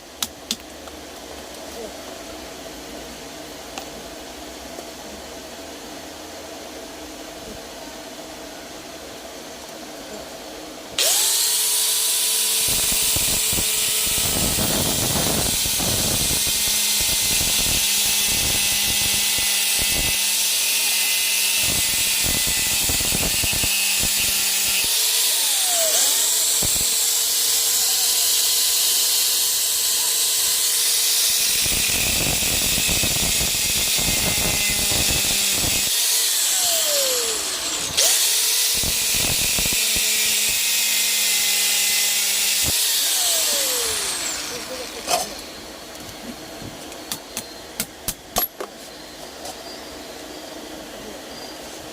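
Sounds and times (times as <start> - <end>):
cordless drill whining: 11.0 - 45.6.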